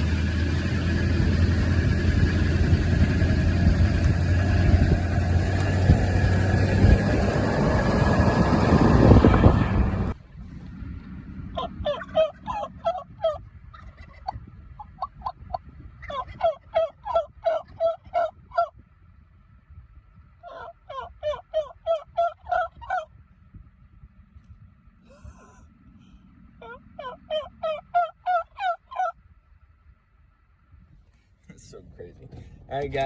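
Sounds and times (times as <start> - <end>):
turkey gobbling: 11.6 - 18.7, 20.4 - 23.1, 26.6 - 29.2.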